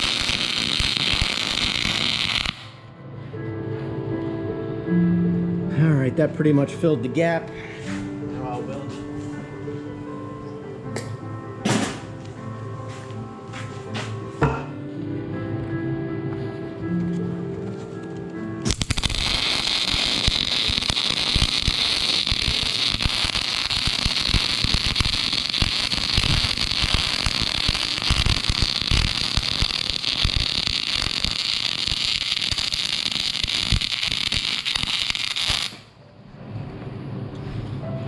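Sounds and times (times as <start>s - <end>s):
welder arc crackling: 0.0s - 2.8s, 18.6s - 35.9s.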